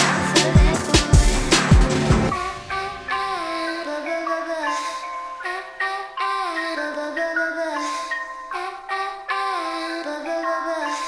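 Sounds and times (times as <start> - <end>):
snare or hi-hat hits: 0.0 - 2.3
beat with booming kick drums: 0.0 - 2.6.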